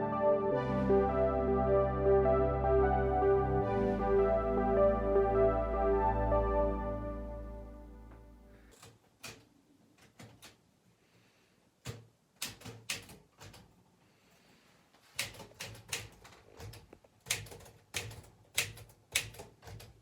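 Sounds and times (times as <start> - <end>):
typewriter keystroke clacks: 8.7 - 10.6, 11.8 - 13.8, 15.2 - 20.0.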